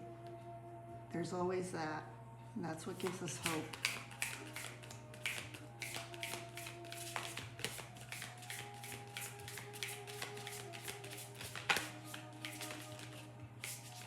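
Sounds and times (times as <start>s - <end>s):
cards being shuffled: 3.0s - 14.0s.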